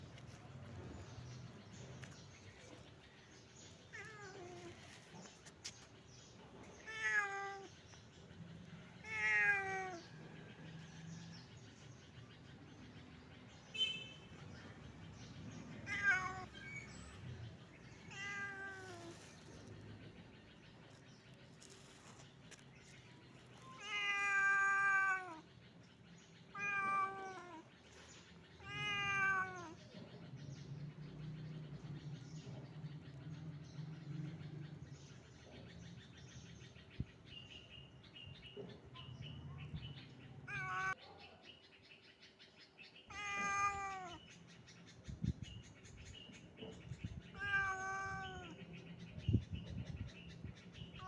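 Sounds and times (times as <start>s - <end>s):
cat meowing: 6.8s - 7.8s, 9.0s - 10.1s, 15.7s - 16.5s, 18.0s - 19.3s, 23.6s - 25.4s, 26.5s - 27.7s, 28.6s - 29.8s, 40.4s - 41.0s, 43.1s - 44.2s, 47.3s - 48.6s.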